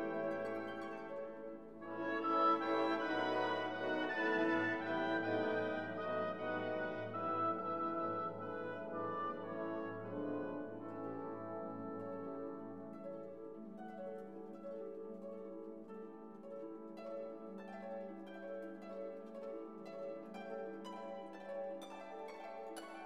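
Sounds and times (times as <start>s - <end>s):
plucked harp-like notes: 0.0s - 23.0s.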